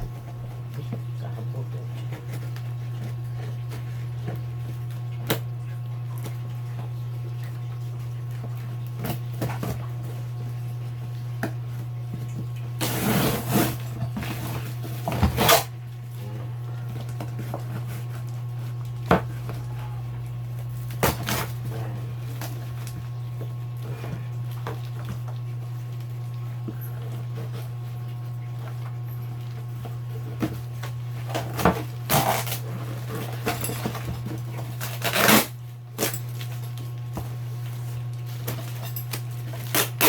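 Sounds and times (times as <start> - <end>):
steady low hum: 0.0 - 4.8
packaging rustling and scraping: 12.8 - 15.7, 30.2 - 40.0.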